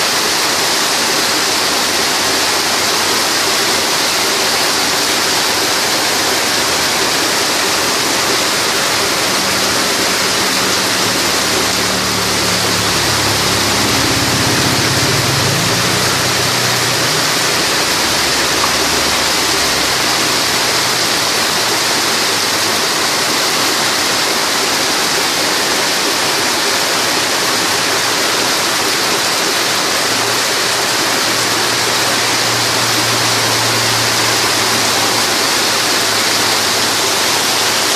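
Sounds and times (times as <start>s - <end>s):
heavy rain pouring: 0.0s - 37.9s
low hum: 5.7s - 22.2s.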